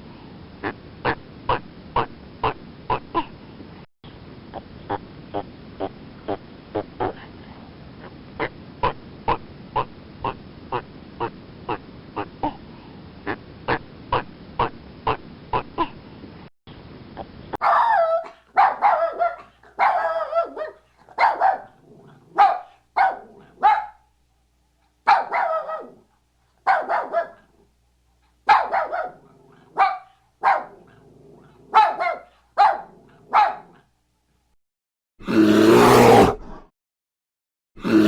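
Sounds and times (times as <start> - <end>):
animal barking: 0.6 - 3.3, 4.5 - 7.3, 8.0 - 12.6, 13.2 - 15.9, 17.6 - 24.1, 25.0 - 26.1, 26.7 - 27.7, 28.5 - 33.9, 35.2 - 36.6.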